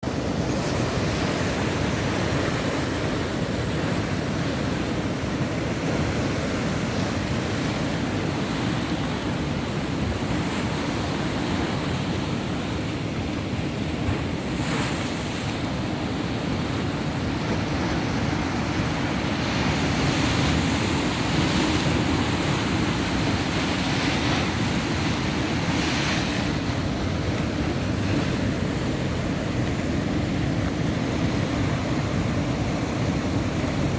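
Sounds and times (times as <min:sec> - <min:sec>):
heavy surf waves breaking: 0:00.0 - 0:33.9
wind buffeting microphone: 0:00.0 - 0:33.9.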